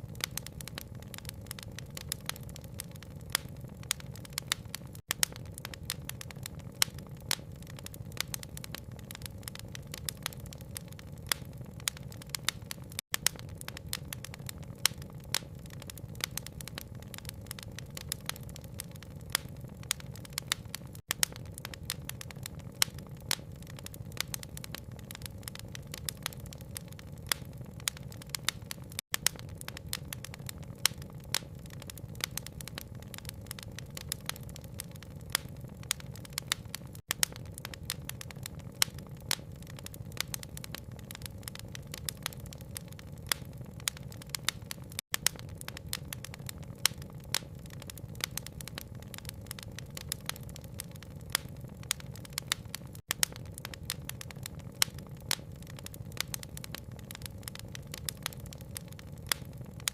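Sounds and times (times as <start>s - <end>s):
wood fire crackling and popping: 0.0s - 59.9s.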